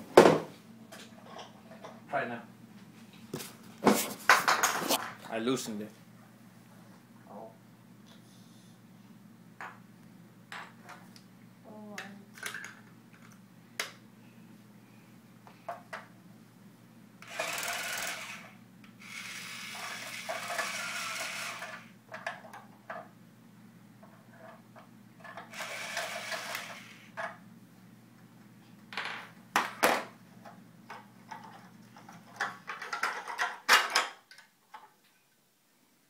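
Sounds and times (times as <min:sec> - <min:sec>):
cordless drill whirring: 0:17.2 - 0:21.9, 0:25.5 - 0:27.2
plastic parts clicking and knocking: 0:30.9 - 0:34.9.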